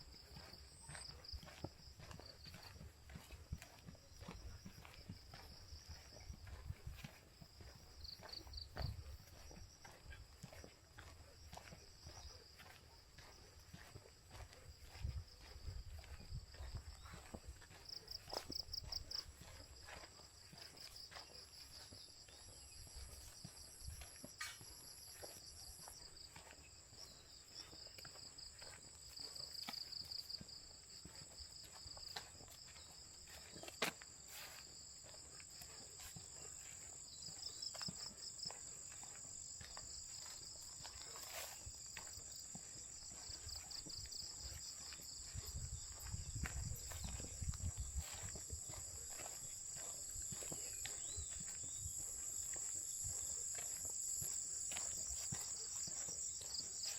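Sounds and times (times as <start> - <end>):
insects droning: 0.0 - 56.9
pulsing insect trill: 35.1 - 56.9.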